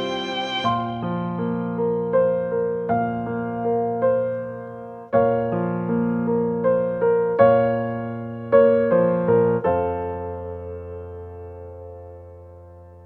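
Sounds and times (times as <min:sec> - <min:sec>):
gentle piano music: 0:00.0 - 0:13.0.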